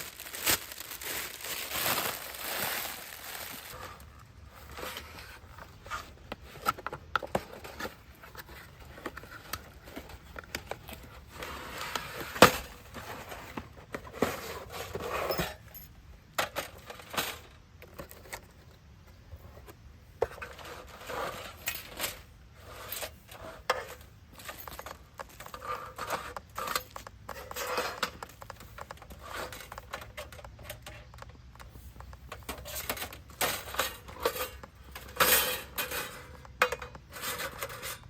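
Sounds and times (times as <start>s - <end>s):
objects being handled: 0.0s - 38.0s.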